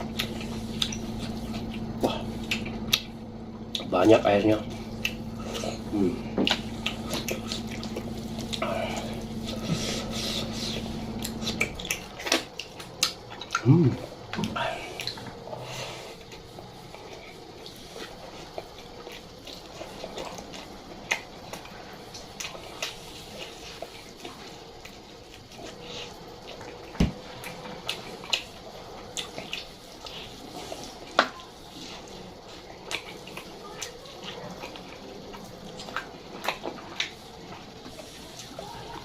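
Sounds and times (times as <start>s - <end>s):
faint steady hum: 0.0s - 39.0s
wet chewing and mouth clicks: 0.0s - 39.0s.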